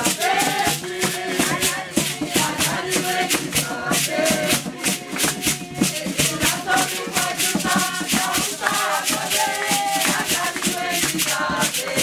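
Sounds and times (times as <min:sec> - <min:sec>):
fast shaker rhythm: 0:00.0 - 0:12.0.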